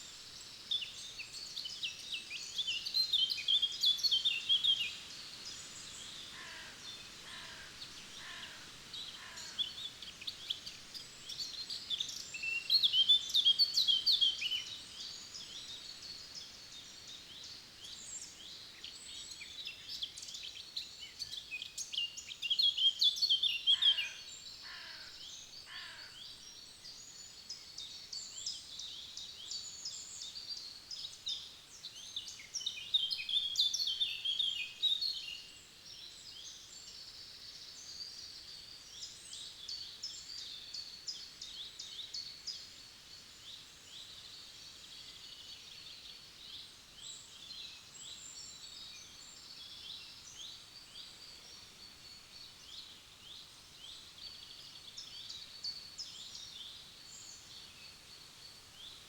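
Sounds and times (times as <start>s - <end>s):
distant birds chorus: 5.2s - 12.2s.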